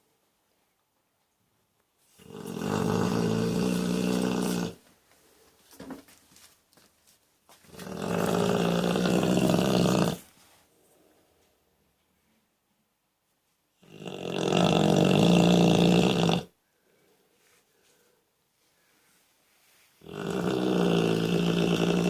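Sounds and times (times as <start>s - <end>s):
dog snoring: 2.2s - 4.8s, 7.7s - 10.2s, 13.8s - 16.5s, 20.0s - 22.0s.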